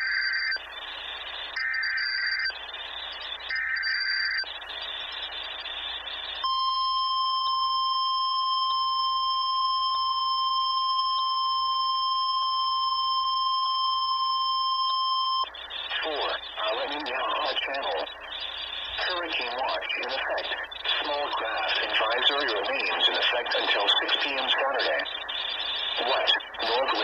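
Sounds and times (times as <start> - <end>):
steady warning alarm tone: 6.4 - 27.0
radio hiss: 15.4 - 27.0.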